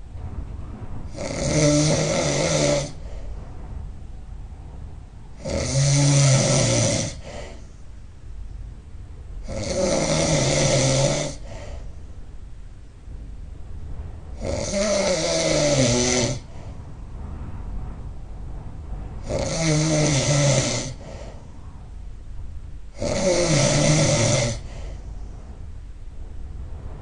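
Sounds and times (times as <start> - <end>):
person snoring loudly: 1.1 - 3.1, 5.4 - 7.6, 9.4 - 11.7, 14.4 - 16.6, 19.2 - 21.3, 23.0 - 24.8.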